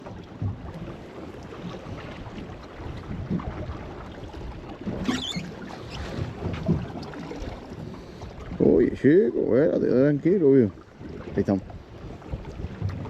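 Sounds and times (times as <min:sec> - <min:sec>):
water slapping boat hull: 0:00.0 - 0:13.0.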